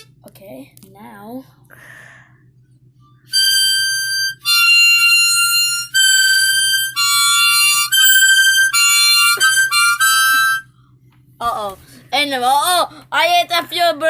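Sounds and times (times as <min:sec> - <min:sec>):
wind instrument playing western tune: 0:03.3 - 0:10.7.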